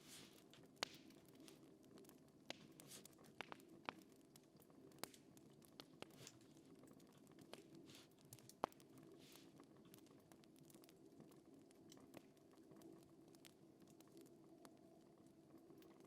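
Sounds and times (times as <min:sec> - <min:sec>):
soft hisses: 0:00.0 - 0:01.0
fire crackling pops: 0:00.0 - 0:14.8
low steady background noise: 0:00.0 - 0:16.0.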